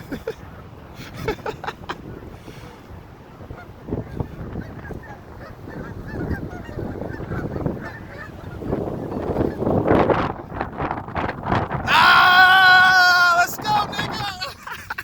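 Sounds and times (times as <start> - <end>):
geese honking: 3.4 - 9.8.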